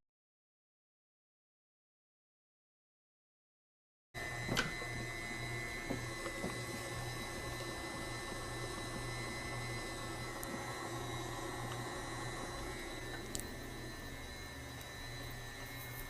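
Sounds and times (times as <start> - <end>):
small motor humming with whine: 4.2 - 16.0
click: 13.1 - 13.5.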